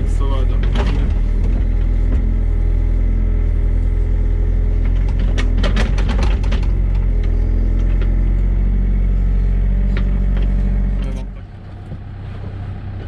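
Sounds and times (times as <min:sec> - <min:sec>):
metal clanks and rattles: 0:00.0 - 0:02.6, 0:04.7 - 0:08.6
diesel engine running: 0:00.0 - 0:13.0.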